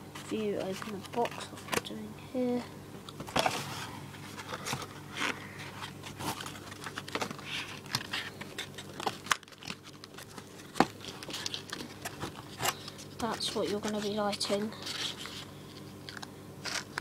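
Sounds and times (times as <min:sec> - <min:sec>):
packaging crinkling and tearing: 0:04.4 - 0:17.0.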